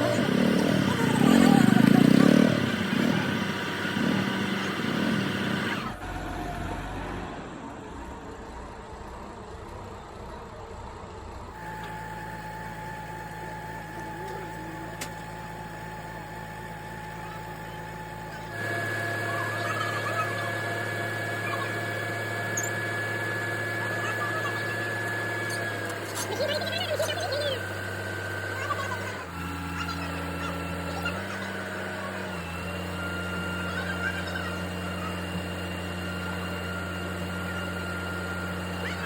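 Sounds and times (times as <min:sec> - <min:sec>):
steady machine hum: 0:00.0 - 0:06.0.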